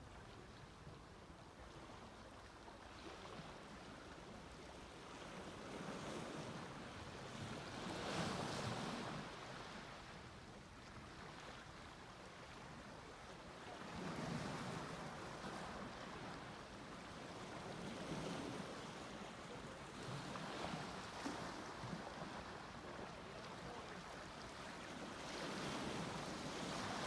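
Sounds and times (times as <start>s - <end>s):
sea waves breaking on beach: 13.7s - 27.0s.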